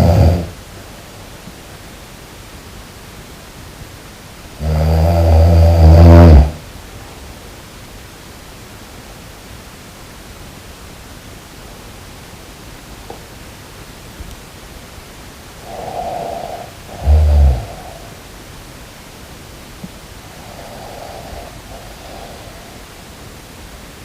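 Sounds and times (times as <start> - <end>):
person snoring: 0.0 - 0.6, 4.6 - 6.6, 15.6 - 18.2, 20.2 - 22.8
steady hiss: 0.0 - 24.0.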